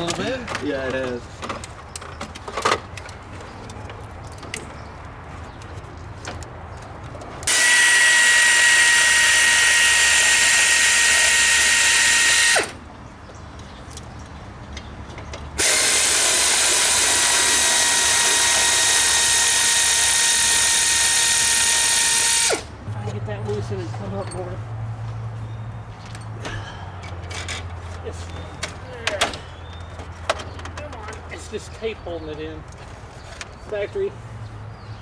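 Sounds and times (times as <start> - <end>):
power tool whining: 7.5 - 12.8, 15.6 - 22.7.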